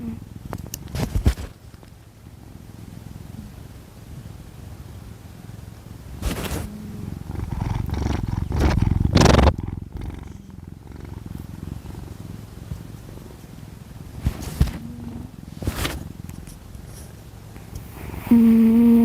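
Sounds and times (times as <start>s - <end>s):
cat snoring: 6.2s - 13.4s, 14.2s - 16.6s, 17.8s - 19.0s.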